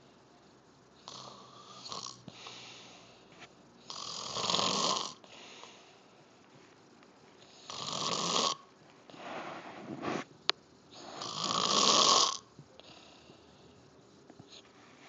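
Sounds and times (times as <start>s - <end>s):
loud snores: 1.0s - 2.6s, 3.8s - 5.4s, 7.6s - 8.7s, 11.0s - 13.3s
soft breath: 1.4s - 3.6s, 5.2s - 6.7s, 9.1s - 10.3s, 12.7s - 15.0s.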